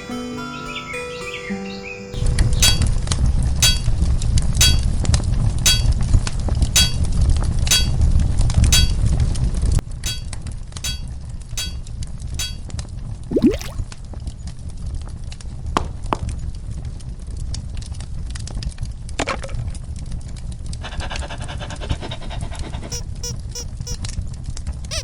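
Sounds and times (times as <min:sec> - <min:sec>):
hammer striking anvil: 0:03.6 - 0:03.9, 0:04.6 - 0:04.8, 0:05.7 - 0:05.9, 0:06.8 - 0:07.0, 0:07.7 - 0:08.0, 0:08.8 - 0:09.0, 0:10.0 - 0:11.8, 0:12.4 - 0:12.6.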